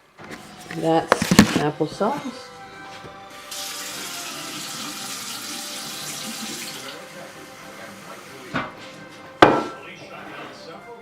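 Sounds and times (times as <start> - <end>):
kitchen tap running: 3.3 - 8.7.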